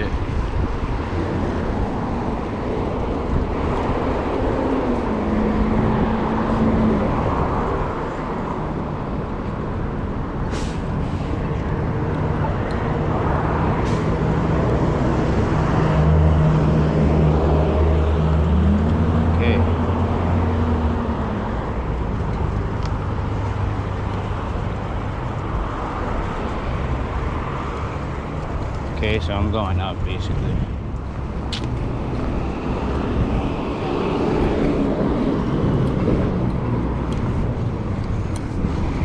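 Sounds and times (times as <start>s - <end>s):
road noise: 0.0s - 39.0s
vehicles passing: 0.0s - 39.0s.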